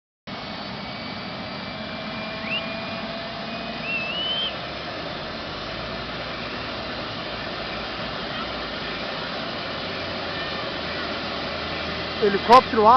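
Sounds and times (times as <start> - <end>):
helicopter engine and rotor running: 0.3 - 12.9
short whistles: 2.3 - 4.6.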